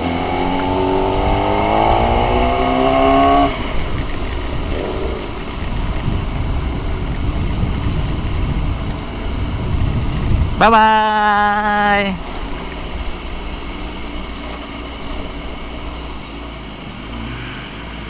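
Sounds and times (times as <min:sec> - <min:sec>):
motorcycle engine accelerating: 0:00.0 - 0:10.6
wind and road noise: 0:00.0 - 0:18.0.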